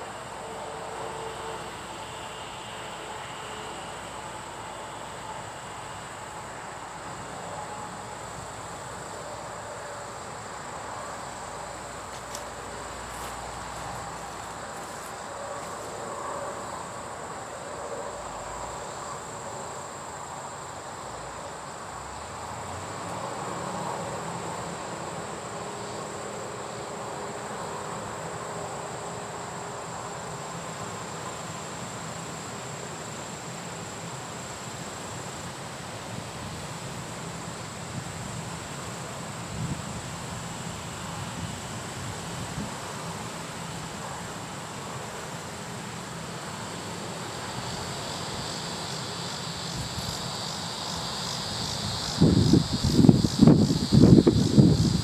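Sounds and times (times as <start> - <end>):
insects trilling: 0.0 - 55.0.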